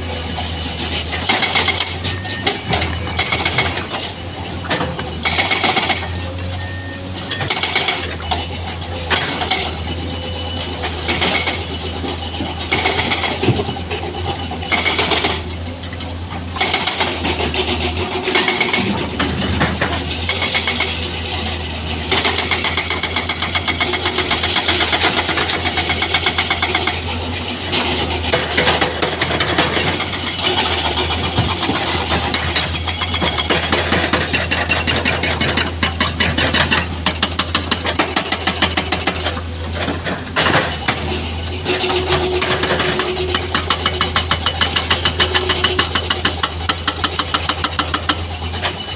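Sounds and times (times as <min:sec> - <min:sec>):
heavy diesel engine running: 0:00.0 - 0:48.9
metal clanks and knocks: 0:11.0 - 0:21.0, 0:27.7 - 0:48.9.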